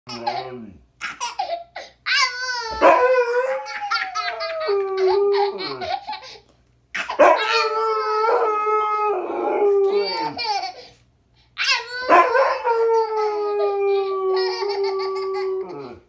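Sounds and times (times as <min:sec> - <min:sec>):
dog howling: 0:02.6 - 0:05.9, 0:07.2 - 0:10.4, 0:11.7 - 0:16.0
child laughing: 0:03.5 - 0:06.4, 0:09.8 - 0:10.9, 0:14.3 - 0:16.0.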